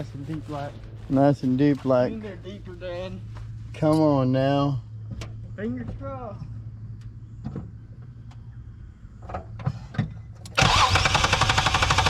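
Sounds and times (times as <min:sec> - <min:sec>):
starter motor cranking engine: 0:10.5 - 0:12.0.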